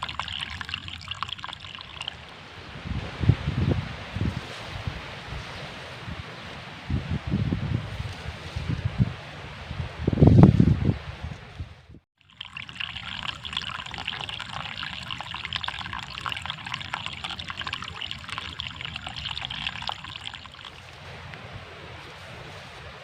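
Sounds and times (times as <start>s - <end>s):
water trickling: 0.0s - 2.4s, 12.2s - 21.1s.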